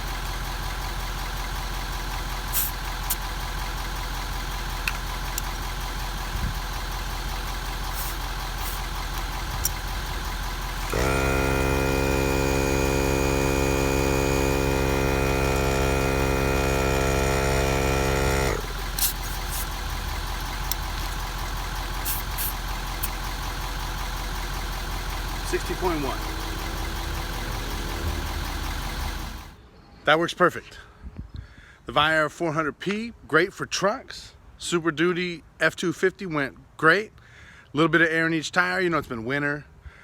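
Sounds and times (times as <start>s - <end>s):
air compressor running: 0.0s - 29.6s
low engine idle hum: 0.0s - 29.6s.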